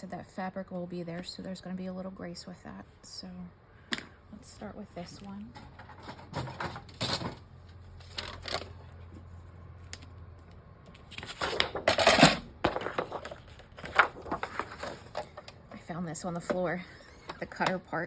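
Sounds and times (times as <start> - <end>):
craft tools clattering: 5.6 - 7.4
paper rustling: 10.9 - 15.5.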